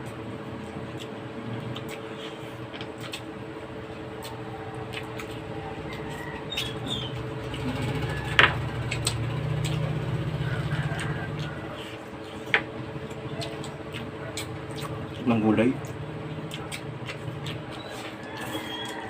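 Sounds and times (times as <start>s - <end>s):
low engine-like rumble: 0.0s - 19.0s.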